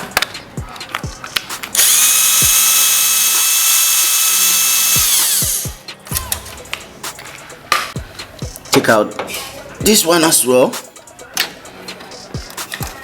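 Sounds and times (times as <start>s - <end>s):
power screwdriver motor whining: 1.8s - 5.8s.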